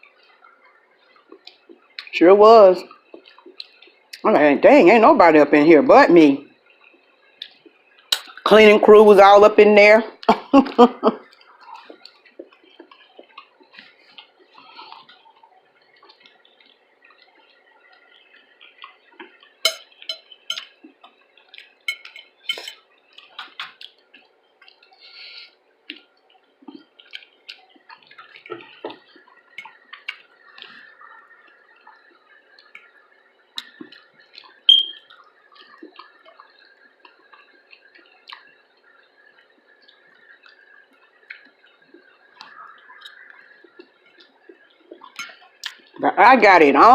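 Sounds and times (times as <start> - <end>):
chewing mouth clicks and smacks: 0.4 - 2.1, 2.9 - 4.2, 6.7 - 8.5, 11.2 - 33.0, 33.6 - 46.0
utensil tapping a dish: 19.7 - 20.7, 21.9 - 22.8.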